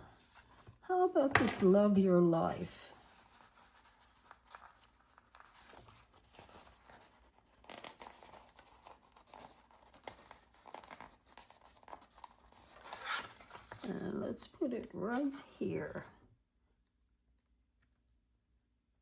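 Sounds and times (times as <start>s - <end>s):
paper rustling and crinkling: 2.8s - 14.5s.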